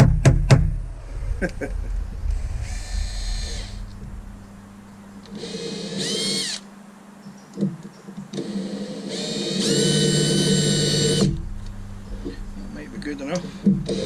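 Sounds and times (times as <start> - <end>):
power drill motor whine: 5.2 - 6.7, 8.5 - 11.4.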